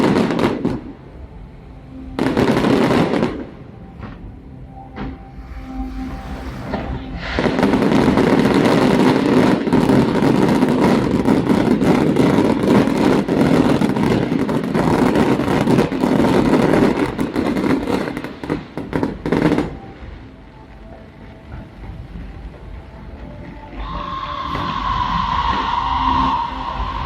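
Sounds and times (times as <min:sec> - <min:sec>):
fireworks bangs and crackling: 0:00.0 - 0:00.9, 0:05.0 - 0:20.1.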